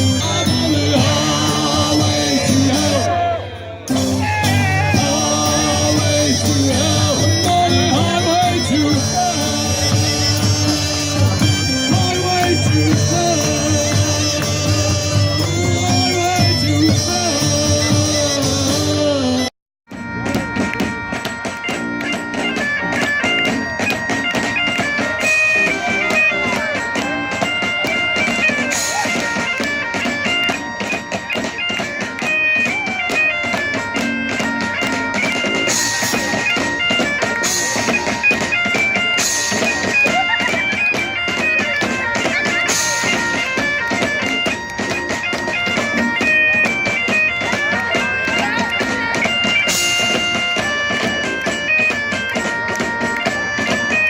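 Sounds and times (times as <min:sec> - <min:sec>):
bagpipe melody with drones: 0:00.0 - 0:54.0
rapid drumming: 0:03.9 - 0:19.1.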